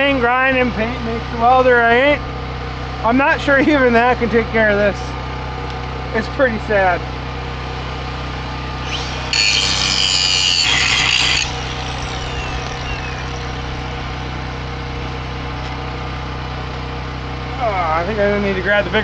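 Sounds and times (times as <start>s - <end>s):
petrol generator running: 5.0s - 17.6s
angle grinder grinding steel: 7.6s - 14.9s.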